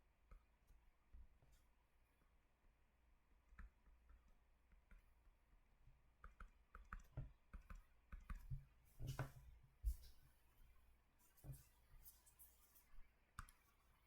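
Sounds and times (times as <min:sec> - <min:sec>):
faint clicks and taps: 0:03.5 - 0:05.2, 0:05.8 - 0:10.3, 0:11.2 - 0:13.9.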